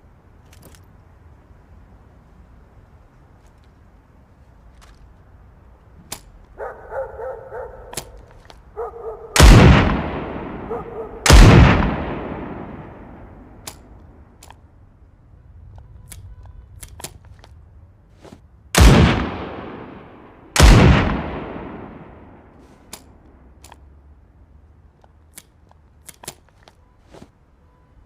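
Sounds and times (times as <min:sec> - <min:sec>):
shotgun blasts echoing: 0:09.3 - 0:13.9, 0:18.8 - 0:22.6.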